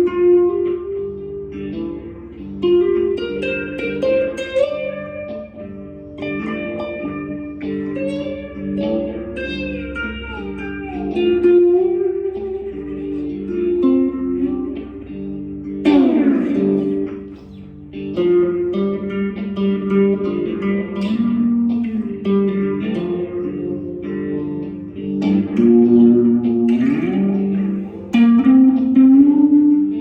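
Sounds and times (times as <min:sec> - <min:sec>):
slide guitar: 0:00.0 - 0:30.0.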